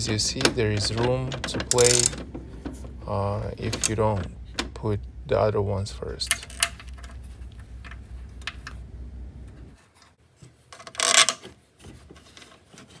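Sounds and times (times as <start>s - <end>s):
hand tools clicking on bolts: 0.0s - 2.9s, 3.6s - 4.8s
low hum: 1.5s - 9.8s.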